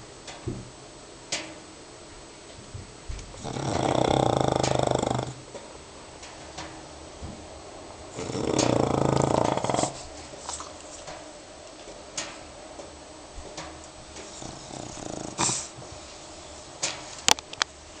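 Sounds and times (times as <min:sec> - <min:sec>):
dog snoring softly: 0:03.3 - 0:05.5, 0:08.1 - 0:11.0, 0:14.2 - 0:16.0.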